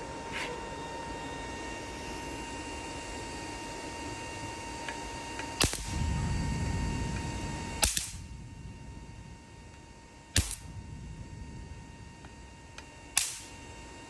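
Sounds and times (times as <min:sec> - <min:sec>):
charger high whine: 0:00.0 - 0:14.0
sharp electrical snap: 0:05.4 - 0:06.3, 0:07.1 - 0:08.6, 0:09.7 - 0:11.1, 0:12.2 - 0:14.0
low rumble: 0:05.6 - 0:13.7.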